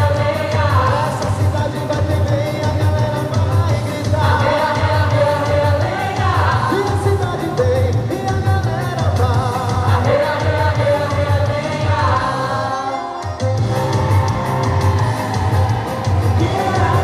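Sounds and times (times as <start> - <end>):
folk dance song with bass beat: 0.0 - 17.0.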